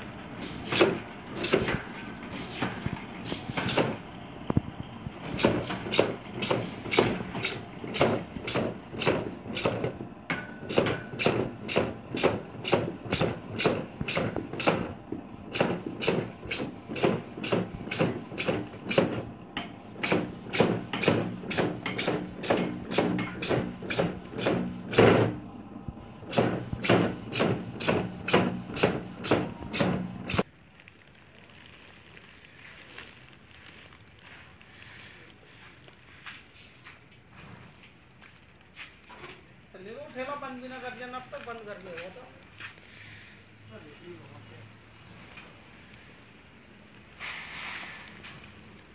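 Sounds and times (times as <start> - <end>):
drill boring into plastic pipe: 15.5 - 19.2.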